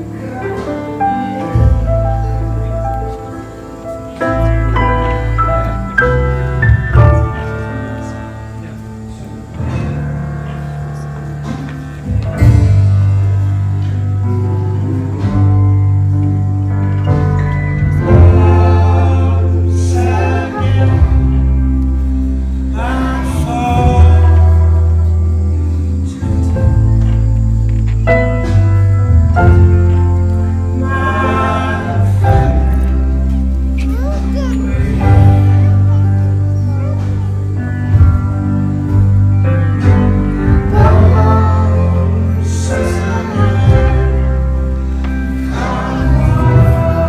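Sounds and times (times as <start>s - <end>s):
sustained low bass notes: 0.0s - 47.0s
person singing: 18.0s - 21.9s, 22.6s - 26.9s, 30.6s - 38.1s, 39.9s - 47.0s.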